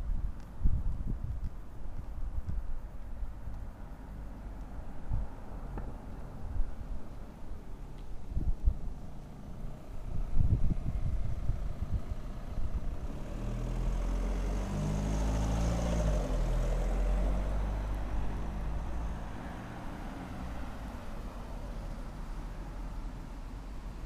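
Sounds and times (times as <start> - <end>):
wind thumps on microphone: 0.0 - 3.7, 4.6 - 7.2, 8.0 - 9.0, 10.0 - 13.2
vehicle passing by: 9.3 - 23.1.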